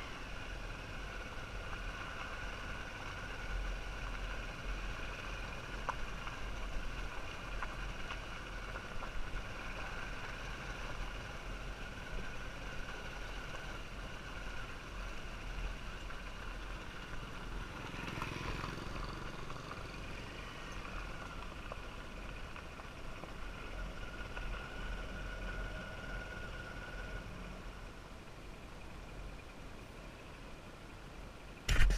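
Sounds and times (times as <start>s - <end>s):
road traffic rumble: 0.0s - 31.9s
vehicle passing by: 17.6s - 21.0s.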